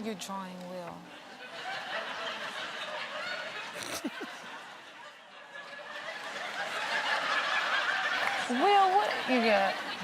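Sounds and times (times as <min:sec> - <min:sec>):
audience laughing and murmuring: 0:00.9 - 0:10.0.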